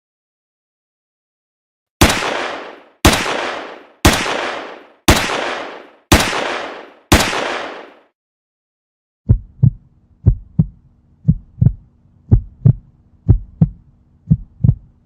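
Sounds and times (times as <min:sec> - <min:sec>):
sharp bangs: 0:02.0 - 0:08.1.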